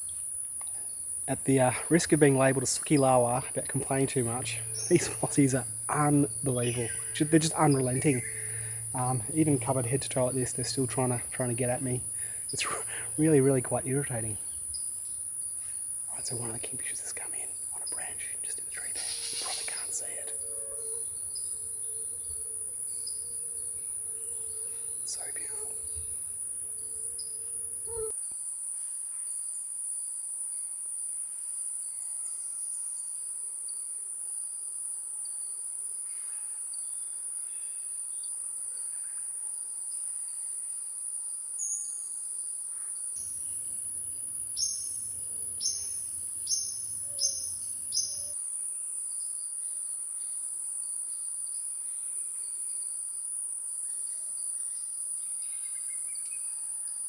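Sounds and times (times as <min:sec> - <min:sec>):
insects droning: 0:00.0 - 0:57.0
sharp high bird calls: 0:01.4 - 0:14.6, 0:17.9 - 0:21.6, 0:44.6 - 0:48.4.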